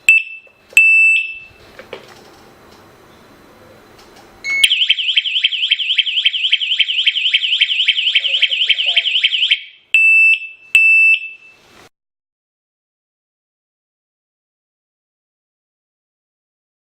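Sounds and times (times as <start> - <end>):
short steady beeps: 0.0 - 1.6, 4.4 - 4.9, 10.0 - 11.6
alarm siren warbling: 4.5 - 11.5.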